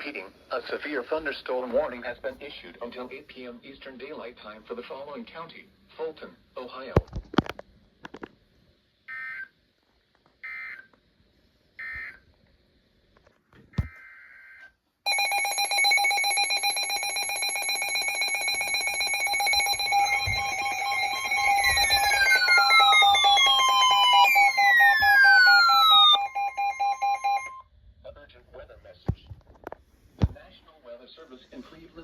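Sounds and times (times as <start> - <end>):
multi-tone alert signal: 15.1 - 27.6
digital data bursts: 18.0 - 27.6.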